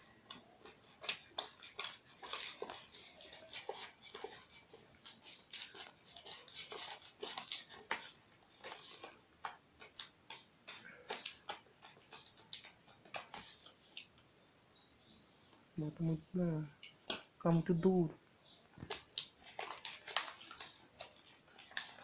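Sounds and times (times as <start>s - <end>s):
slime squelching by hand: 0.0s - 14.2s, 18.8s - 22.0s.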